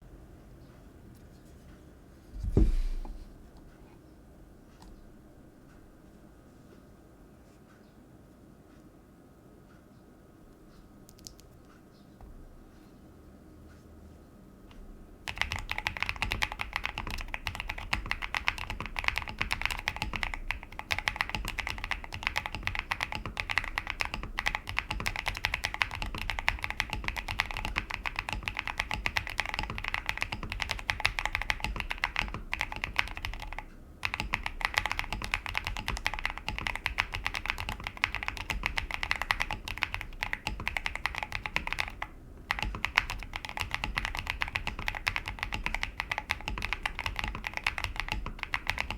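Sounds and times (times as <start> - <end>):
fast mechanical keyboard typing: 15.2 - 48.9.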